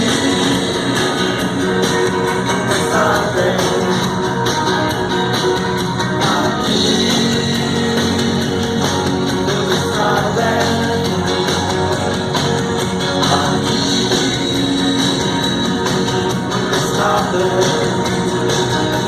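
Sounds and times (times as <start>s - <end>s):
strummed guitar: 0.0s - 19.0s
person singing: 2.6s - 4.3s, 6.2s - 8.5s, 9.3s - 11.9s, 13.1s - 15.2s, 16.6s - 18.5s.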